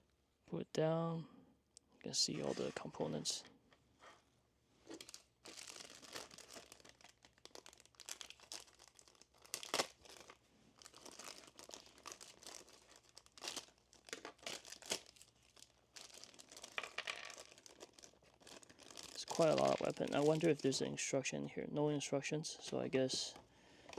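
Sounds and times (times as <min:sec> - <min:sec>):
plastic packaging crinkling: 0:04.8 - 0:20.8.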